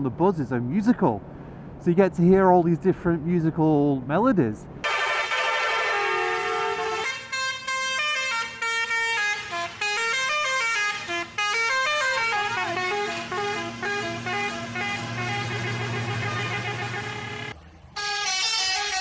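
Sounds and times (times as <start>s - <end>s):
musical bus air horns: 4.8s - 19.0s.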